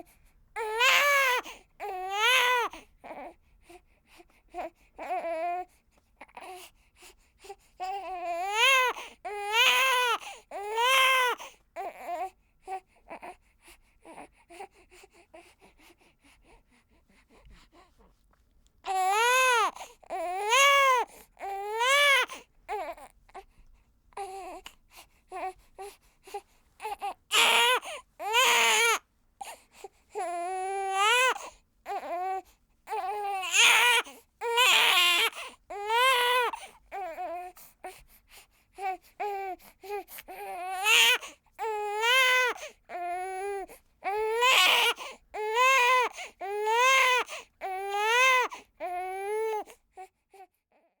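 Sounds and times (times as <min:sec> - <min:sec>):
newborn baby crying: 0:00.6 - 0:03.4, 0:07.8 - 0:13.4, 0:18.9 - 0:23.5, 0:24.1 - 0:38.0, 0:38.8 - 0:50.1
baby whimpering: 0:18.9 - 0:23.1, 0:26.8 - 0:29.0.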